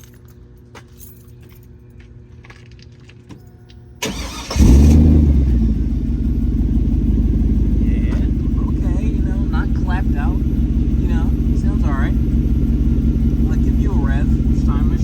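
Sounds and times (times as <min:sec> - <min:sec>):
car engine idling: 0:04.0 - 0:15.0.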